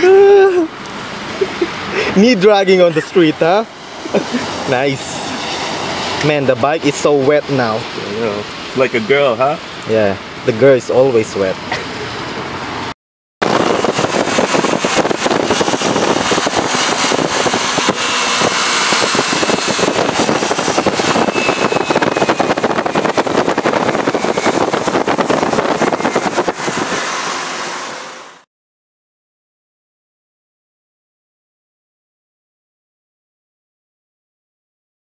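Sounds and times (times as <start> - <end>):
wind and road noise: 0.0 - 28.5
motorcycle engine: 13.4 - 28.4.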